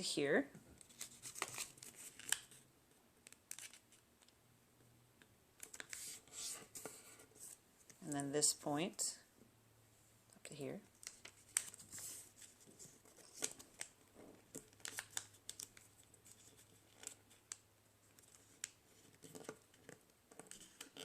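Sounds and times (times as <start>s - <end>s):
paper rustling and crackling: 0.8s - 2.6s, 11.0s - 21.0s.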